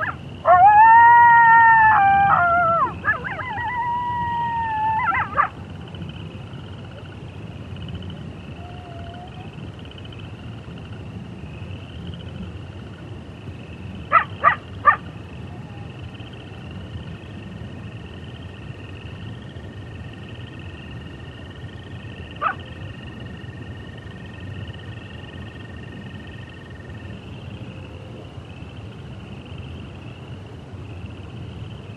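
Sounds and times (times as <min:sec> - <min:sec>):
coyote yipping: 0:00.0 - 0:05.6, 0:14.1 - 0:15.9, 0:22.4 - 0:22.7
frogs and toads trilling chorus: 0:00.0 - 0:31.9.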